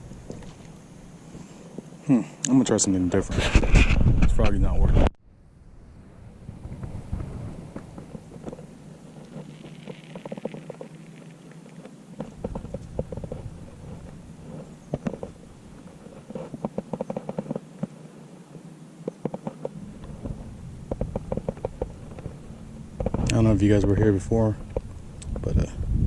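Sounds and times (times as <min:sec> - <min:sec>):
wind rumble on microphone: 0:03.1 - 0:10.6, 0:12.2 - 0:17.1, 0:19.2 - 0:26.0
fishing tackle clicking and rattling: 0:08.4 - 0:17.6.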